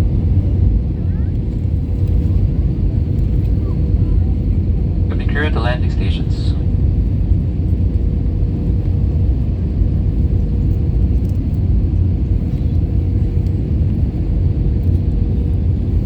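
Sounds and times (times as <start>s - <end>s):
engine and airflow rumble: 0.0s - 16.0s
faint steady hum: 5.1s - 7.2s.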